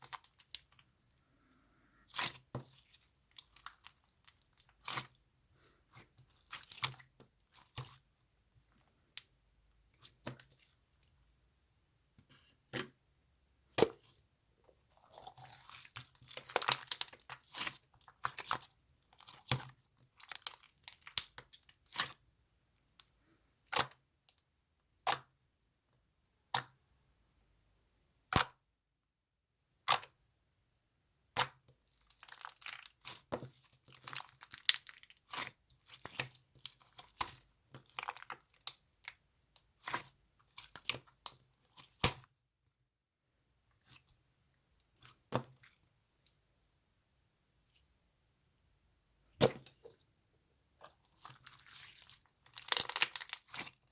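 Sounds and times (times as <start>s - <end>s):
slime squeezed and stretched: 51.2s - 53.9s.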